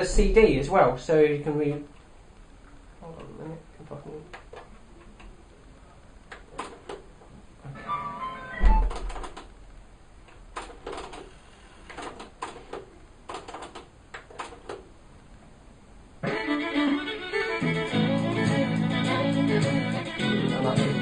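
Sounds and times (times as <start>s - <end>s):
folk fiddle music over speakers: 16.2s - 21.0s.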